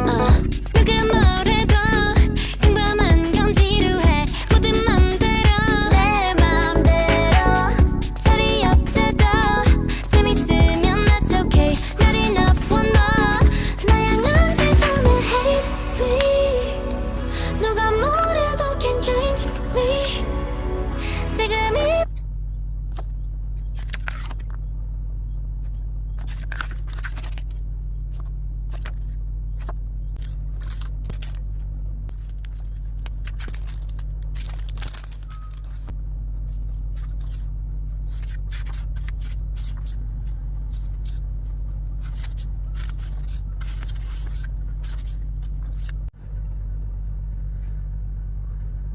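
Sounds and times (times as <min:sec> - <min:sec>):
steady low hum: 0:00.0 - 0:48.9
packaging rustling and scraping: 0:26.2 - 0:46.1.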